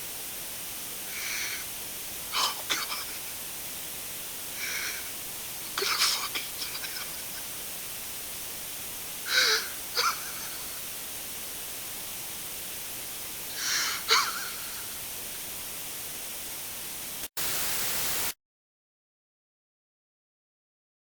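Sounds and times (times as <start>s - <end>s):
radio static hiss: 0.0s - 18.4s
man's shaky sob-like breaths: 9.3s - 9.8s.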